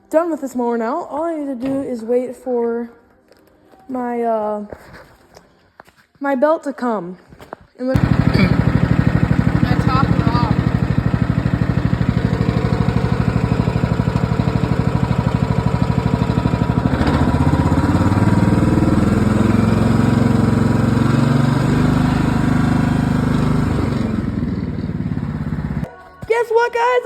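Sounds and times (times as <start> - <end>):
riding lawn mower engine: 8.0 - 25.9.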